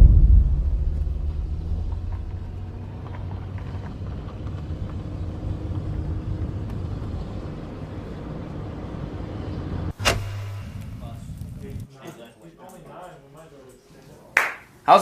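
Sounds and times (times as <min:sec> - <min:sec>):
road noise: 0:00.0 - 0:11.9
vehicle engine humming: 0:00.0 - 0:11.9.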